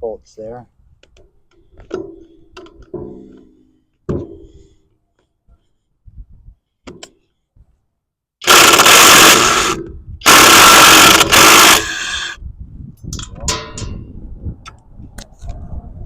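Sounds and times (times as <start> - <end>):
power tool spinning bolts: 8.4 - 12.4.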